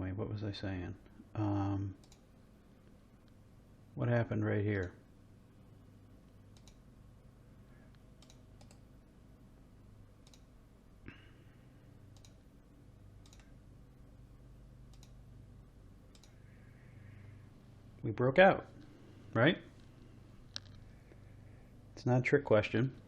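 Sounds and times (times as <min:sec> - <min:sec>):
low room hum: 0:00.0 - 0:23.0
computer mouse clicks: 0:02.0 - 0:02.3, 0:06.3 - 0:06.9, 0:07.9 - 0:08.9, 0:10.2 - 0:10.5, 0:12.1 - 0:12.4, 0:13.2 - 0:13.6, 0:14.9 - 0:15.2, 0:16.1 - 0:16.5, 0:19.8 - 0:20.8.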